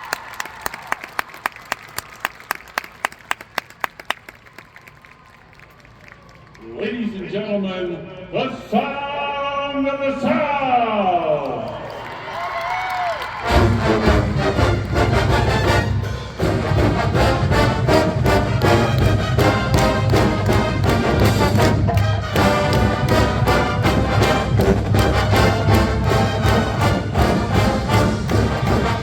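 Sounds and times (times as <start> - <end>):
brass instruments: 13.3 - 29.0
drums keeping a beat: 13.5 - 29.0.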